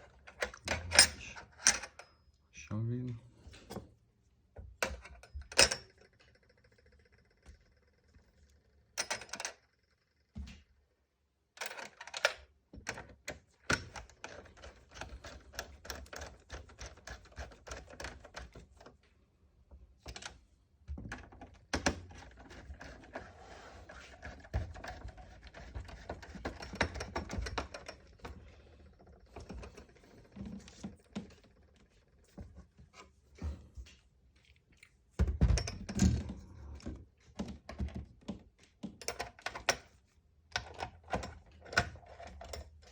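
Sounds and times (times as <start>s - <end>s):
plastic parts clicking and rattling: 0.0s - 2.1s, 11.6s - 19.0s, 21.0s - 32.0s, 40.6s - 42.9s.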